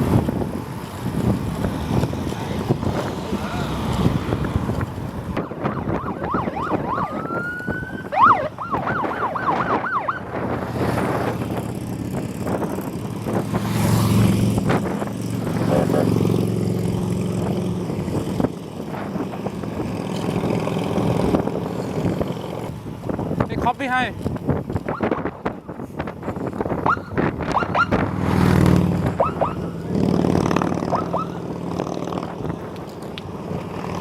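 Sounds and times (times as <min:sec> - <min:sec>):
wind and road noise: 0:00.0 - 0:34.0
emergency vehicle siren: 0:05.4 - 0:10.5, 0:26.8 - 0:28.0, 0:29.2 - 0:29.8, 0:30.9 - 0:31.4.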